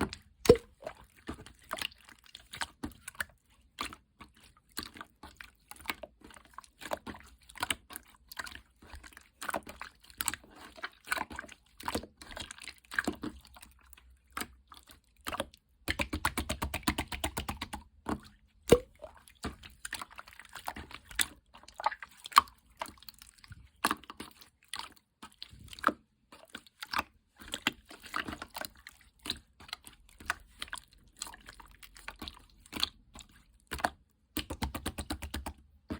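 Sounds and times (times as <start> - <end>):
hands squishing slime: 0.0 - 35.9
wet clicks and pops: 0.1 - 0.8, 15.3 - 19.0, 32.1 - 35.7.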